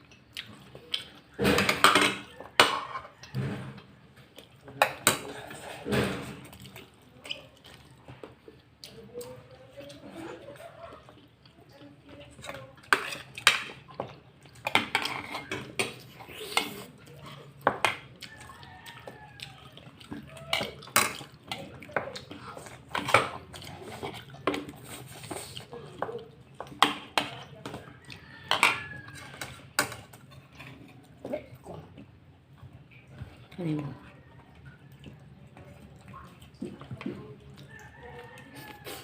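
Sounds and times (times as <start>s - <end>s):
cutlery clinking on a plate: 1.4s - 3.7s, 14.6s - 16.9s.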